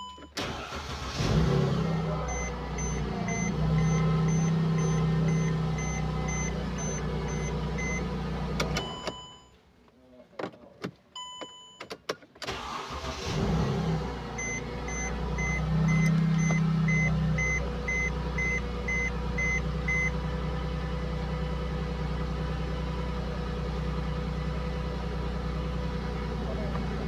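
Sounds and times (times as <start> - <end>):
car engine starting and idling: 0.1 - 9.3, 12.4 - 27.0
warning chime beeping: 2.2 - 8.1, 14.4 - 20.1.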